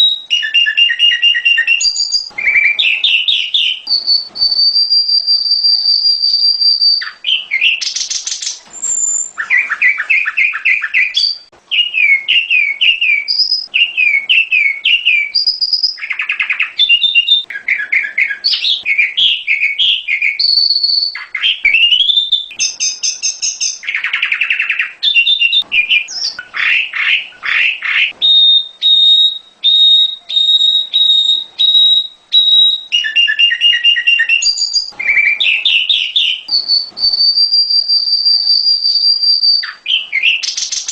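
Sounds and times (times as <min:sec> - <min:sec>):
high steady whistle: 0:00.0 - 0:08.0, 0:18.5 - 0:23.9, 0:28.2 - 0:40.8
bird singing trilled phrases: 0:00.0 - 0:40.9.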